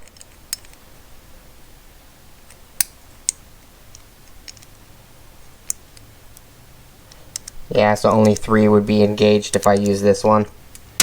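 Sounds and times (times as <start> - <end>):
small metal parts clicking: 0.0 - 0.8, 2.5 - 4.8, 7.1 - 8.6.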